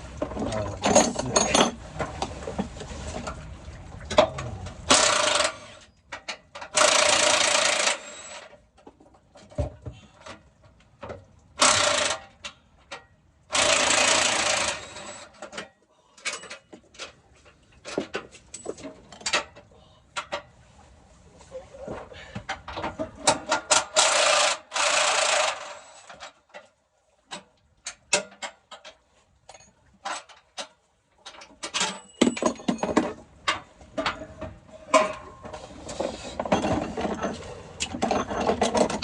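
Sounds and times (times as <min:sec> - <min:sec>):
cordless power tool on bolts: 0:06.8 - 0:08.5, 0:11.6 - 0:12.2, 0:13.5 - 0:15.3, 0:23.9 - 0:26.1
hand tools clicking and clinking: 0:12.9 - 0:17.2.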